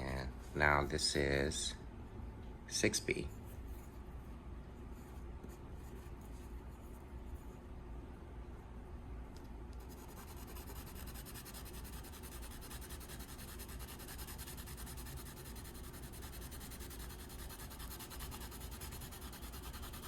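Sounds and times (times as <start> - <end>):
pencil scratching on paper: 9.8 - 20.0.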